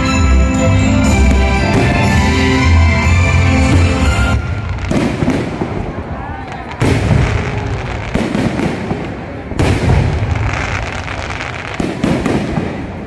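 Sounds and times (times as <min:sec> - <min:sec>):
fireworks crackling: 0:00.0 - 0:13.0
firework bursts: 0:03.7 - 0:13.0.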